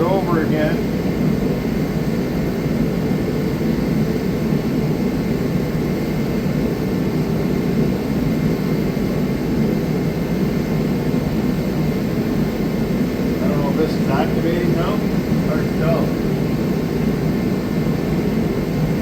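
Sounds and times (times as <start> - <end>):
steady mechanical drone: 0.0 - 19.0.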